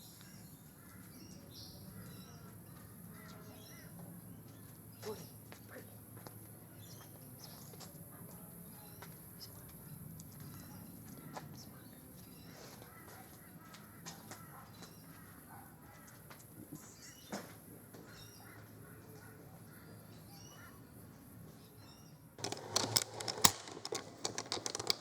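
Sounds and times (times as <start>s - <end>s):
faint birds chirping: 0.0s - 22.4s
small clicks: 22.4s - 25.0s.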